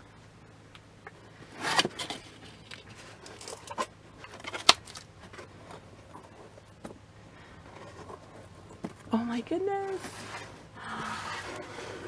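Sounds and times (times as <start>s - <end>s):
packaging rustling: 1.5s - 6.7s.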